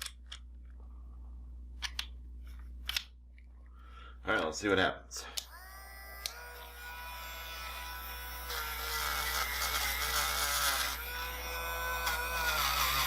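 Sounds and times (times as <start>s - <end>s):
electric rotary tool running: 5.5s - 13.0s.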